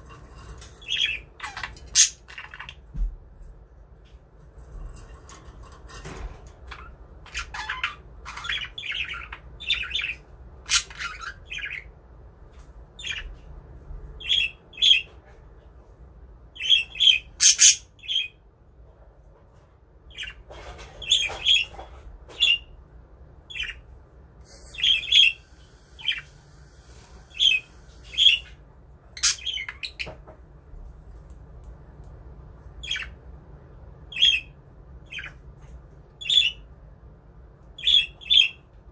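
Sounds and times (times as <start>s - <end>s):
budgerigars chirping and squawking: 0.7s - 2.8s, 6.7s - 11.9s, 13.0s - 13.5s, 14.2s - 15.2s, 16.6s - 18.4s, 20.1s - 22.7s, 23.5s - 23.9s, 24.5s - 30.3s, 32.8s - 33.2s, 34.1s - 35.4s, 36.2s - 36.6s, 37.8s - 38.6s.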